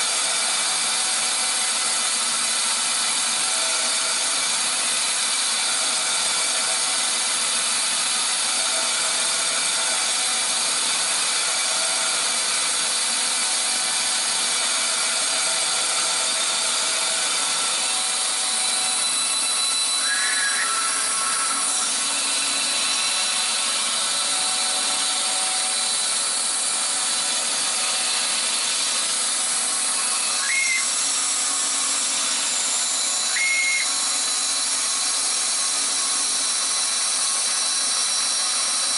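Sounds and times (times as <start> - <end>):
bandsaw cutting plywood: 0.0 - 38.9
brief high squeaks: 19.9 - 21.8, 30.4 - 30.9.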